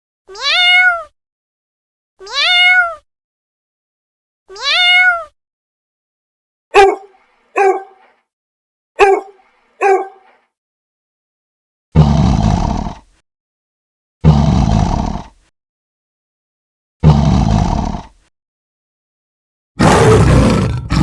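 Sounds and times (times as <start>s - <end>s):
dog barking: 6.7s - 8.1s, 9.0s - 10.4s.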